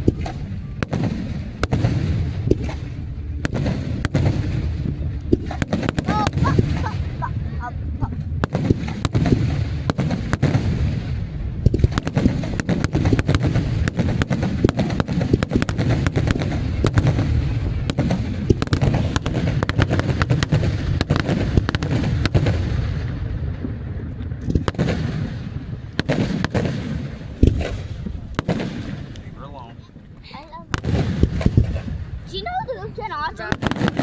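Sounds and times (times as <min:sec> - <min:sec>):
low rumble: 0:00.0 - 0:10.0
fireworks pops and bangs: 0:00.0 - 0:32.5, 0:33.2 - 0:34.0.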